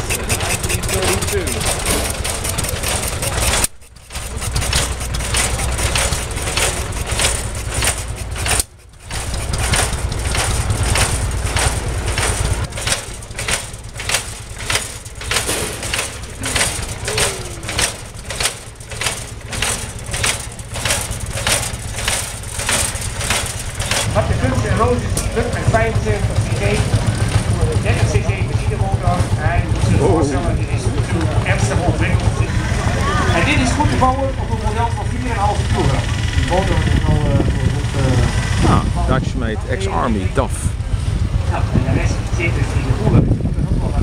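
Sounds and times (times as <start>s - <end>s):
regular knocking: 0.0s - 24.1s
machinery low rumble: 0.0s - 44.0s.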